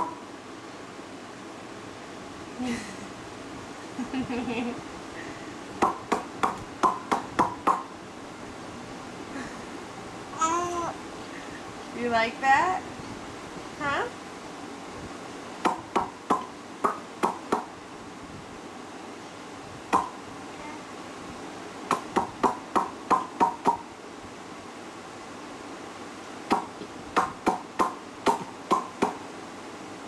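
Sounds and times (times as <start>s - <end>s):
person making mouth pops: 5.8s - 7.9s, 15.6s - 17.7s, 19.9s - 20.2s, 21.9s - 23.8s, 26.5s - 29.2s.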